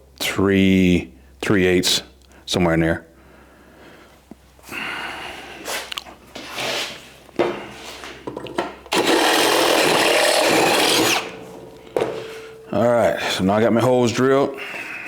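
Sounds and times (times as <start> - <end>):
power drill boring sheet metal: 8.9 - 11.7.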